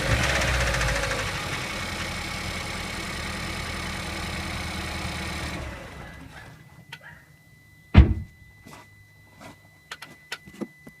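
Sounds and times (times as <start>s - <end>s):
car engine idling: 0.0s - 6.6s
faint steady high tone: 2.3s - 11.0s
loud thunk: 8.0s - 8.3s.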